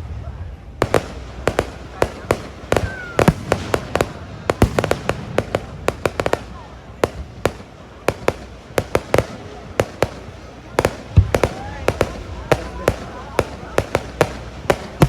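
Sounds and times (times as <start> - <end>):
fireworks bangs and crackles: 0.0 - 15.0
fireworks whistle: 0.8 - 15.0.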